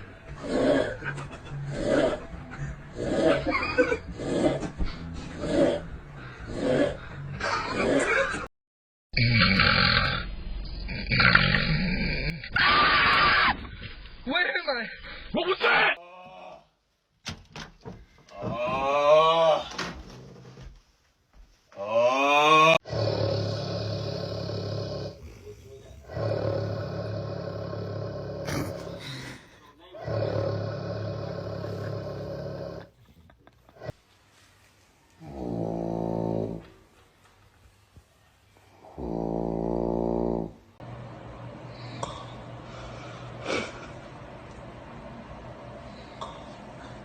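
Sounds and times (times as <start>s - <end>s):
loud snoring: 2.9s - 4.8s, 5.4s - 7.1s, 9.2s - 12.3s, 22.8s - 29.4s, 30.0s - 33.0s, 35.2s - 36.6s, 38.8s - 40.6s.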